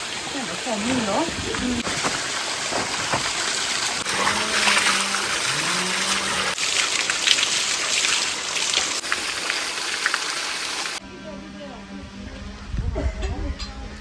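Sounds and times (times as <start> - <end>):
small water splashes: 0.0 - 11.0
stream water flowing: 0.0 - 11.0.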